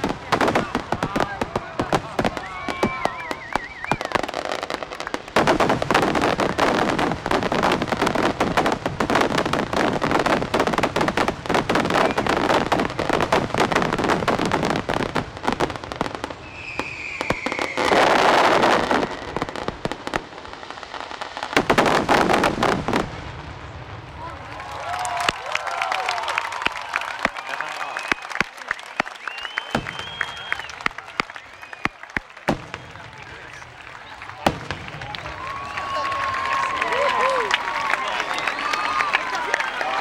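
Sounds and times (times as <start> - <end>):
fireworks bangs and crackles: 0.0 - 40.0
high falling whistle: 2.2 - 4.4, 16.4 - 18.2, 26.1 - 32.0, 35.0 - 40.0.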